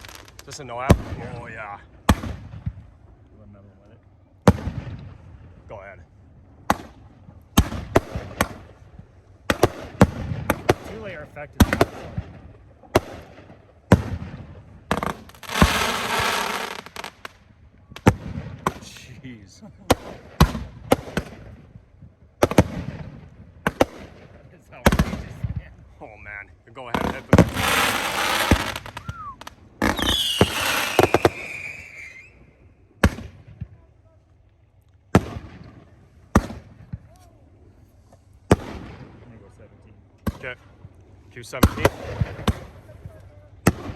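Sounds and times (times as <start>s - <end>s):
small firework pops: 0.0s - 0.6s, 6.7s - 7.0s, 14.9s - 19.0s, 23.6s - 24.1s, 27.0s - 32.2s, 33.0s - 33.8s
firework crackling spray: 0.0s - 0.7s, 14.9s - 17.4s, 27.0s - 32.3s
firework bangs: 0.0s - 3.0s, 4.4s - 5.9s, 6.6s - 33.8s, 35.1s - 37.2s, 38.4s - 39.6s, 40.2s - 43.9s.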